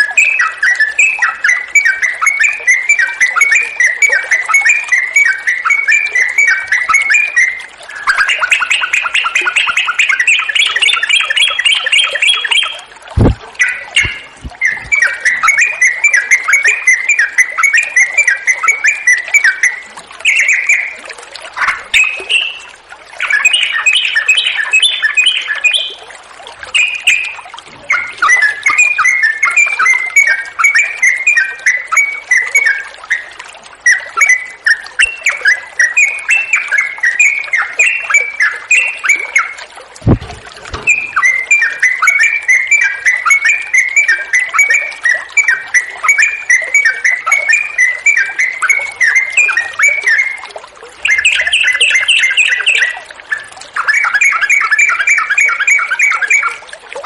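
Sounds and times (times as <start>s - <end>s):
bird chirping song: 0.0s - 26.0s, 26.7s - 50.4s, 51.0s - 56.6s
flowing water: 0.0s - 57.0s
dull thump: 13.2s - 13.4s, 40.0s - 41.2s.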